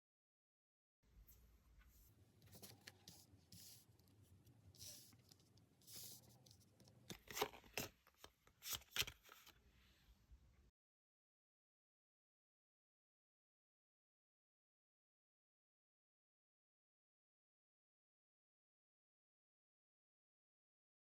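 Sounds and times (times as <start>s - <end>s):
cards sliding: 4.8s - 9.6s.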